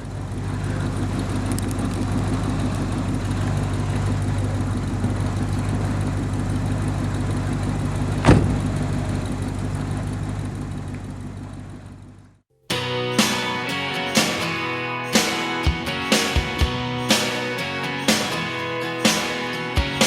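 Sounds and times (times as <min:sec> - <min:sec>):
engine running steadily: 0:00.0 - 0:12.4.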